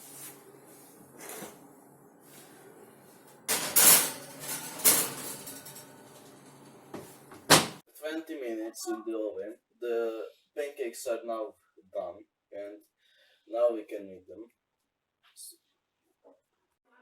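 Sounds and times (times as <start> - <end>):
dish and oven door clanking: 3.3 - 7.8.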